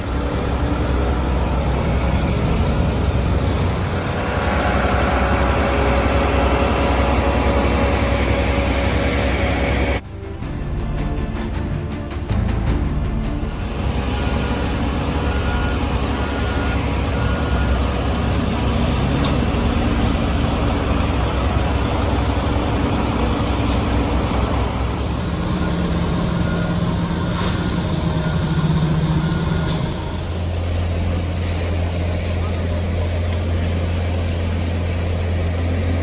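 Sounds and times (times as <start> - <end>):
diesel engine running: 0.0 - 10.0, 13.2 - 36.0
reversing alarm beeps: 14.1 - 19.4, 24.4 - 30.5.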